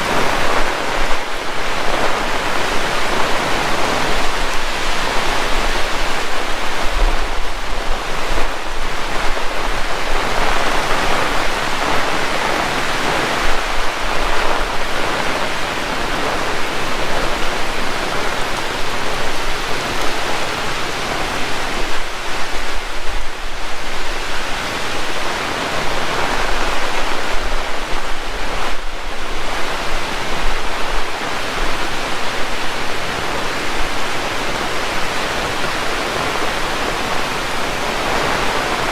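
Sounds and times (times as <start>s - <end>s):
heavy rain pouring: 0.0s - 38.9s.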